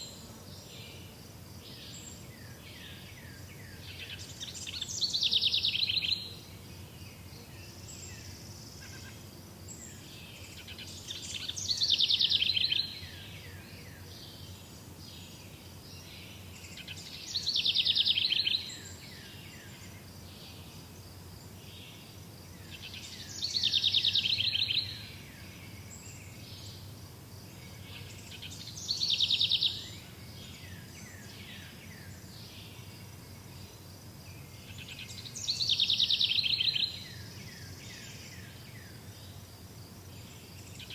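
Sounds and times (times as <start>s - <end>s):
songbird trilling: 35.0s - 37.0s.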